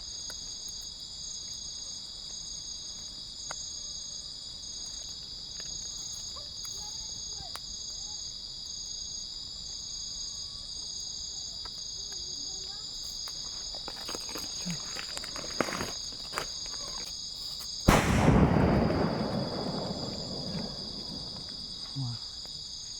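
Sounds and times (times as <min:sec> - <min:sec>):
crickets and insects chirping: 0:00.0 - 0:22.9
loud firecracker bang: 0:17.9 - 0:22.1.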